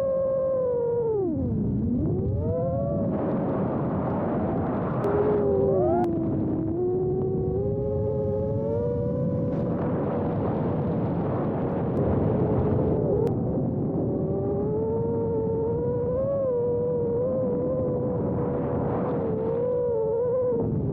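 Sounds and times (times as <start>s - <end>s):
wind noise: 0.0s - 20.9s
drone motors whining: 5.0s - 10.3s, 13.9s - 20.9s.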